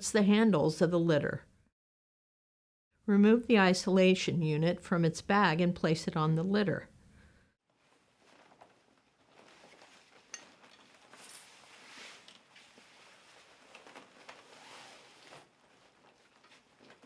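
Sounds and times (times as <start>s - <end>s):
faint rustling of bag: 7.7s - 17.0s.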